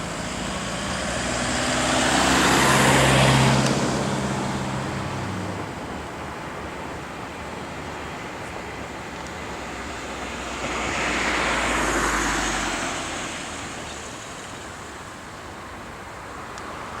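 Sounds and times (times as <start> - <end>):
vehicle passing: 0.0 - 5.7, 9.7 - 14.5
steady outdoor rumble: 0.0 - 17.0.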